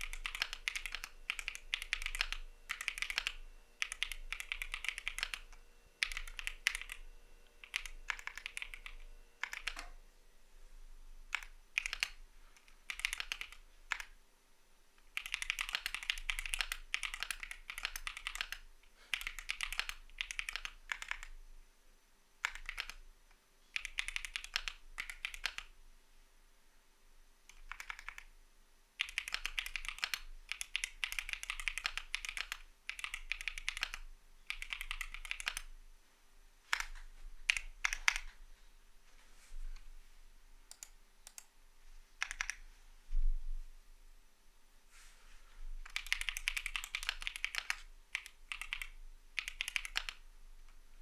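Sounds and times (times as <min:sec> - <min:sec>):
mechanical keyboard typing: 0:00.0 - 0:07.0, 0:07.6 - 0:10.0, 0:11.3 - 0:14.2, 0:15.0 - 0:21.4, 0:22.4 - 0:23.0, 0:23.8 - 0:25.8, 0:27.5 - 0:28.3, 0:29.0 - 0:35.7, 0:36.7 - 0:38.4, 0:42.2 - 0:42.6, 0:45.8 - 0:50.2.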